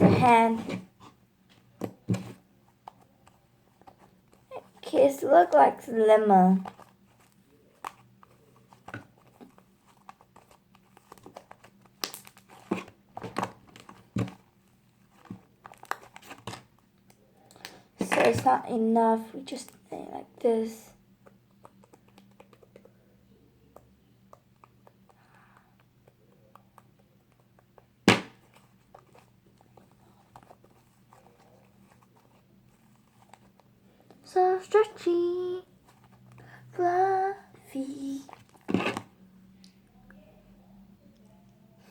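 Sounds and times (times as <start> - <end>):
slime popping and tearing: 12.0 - 12.5.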